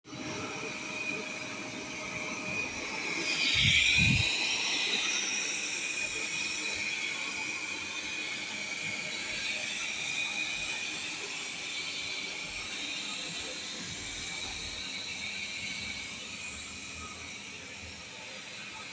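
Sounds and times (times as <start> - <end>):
robot vacuum whining: 3.2 - 4.6.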